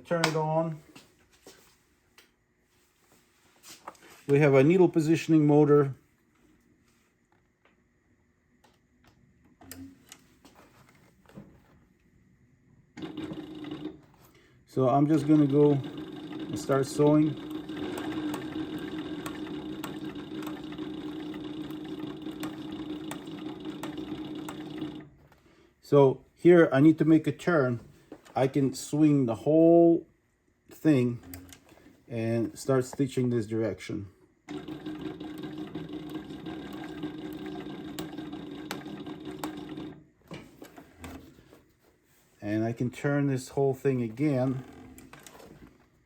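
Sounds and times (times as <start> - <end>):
sewing machine running: 13.0 - 14.1, 14.8 - 25.1, 34.5 - 40.0.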